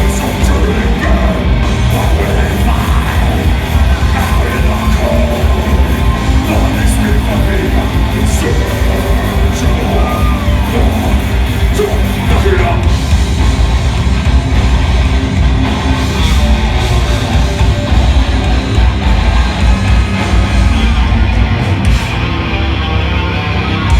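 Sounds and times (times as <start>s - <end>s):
distorted guitars: 0.0s - 23.9s
drums: 0.0s - 23.9s
heavy bass: 0.0s - 23.9s
vocalist yelling: 2.1s - 12.9s.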